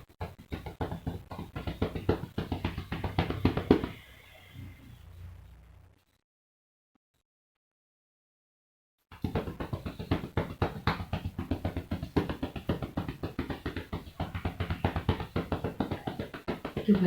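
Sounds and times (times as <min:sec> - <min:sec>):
cupped hands clapping on back: 0:00.0 - 0:04.0, 0:09.2 - 0:17.0.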